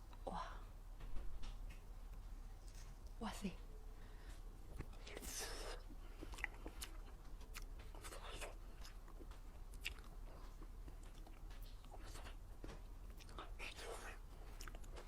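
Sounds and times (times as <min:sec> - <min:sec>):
person biting and chewing: 0:04.8 - 0:12.4, 0:14.4 - 0:15.0.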